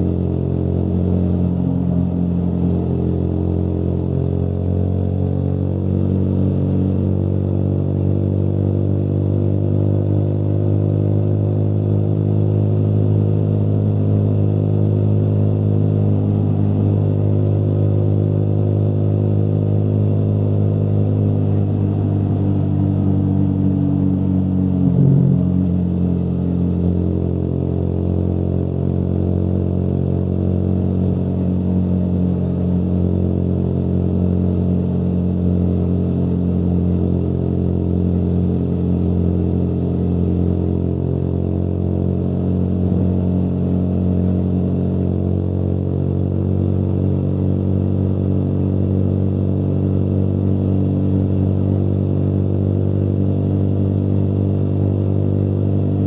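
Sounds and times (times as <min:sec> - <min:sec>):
motorcycle engine cruising: 0:18.9 - 0:29.7.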